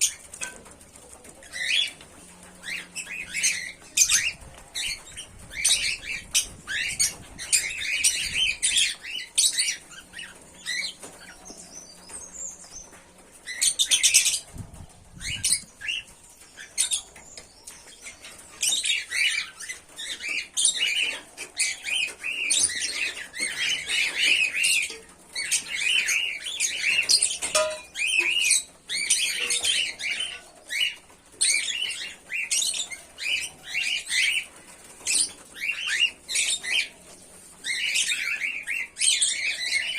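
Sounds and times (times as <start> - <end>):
cockatiels chirping: 1.4 - 11.4.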